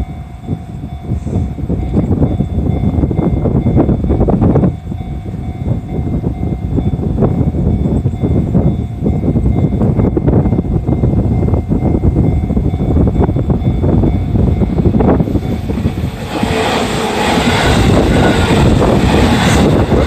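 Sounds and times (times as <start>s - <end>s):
train rumbling: 0.0s - 20.0s
hissing rush: 15.0s - 20.0s.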